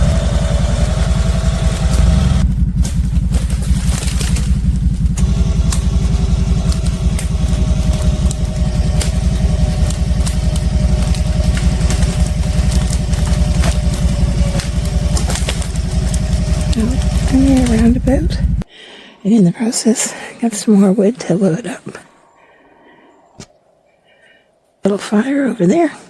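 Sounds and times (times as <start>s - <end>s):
atv engine running: 0.0s - 18.7s
sharp ticks: 0.0s - 18.7s.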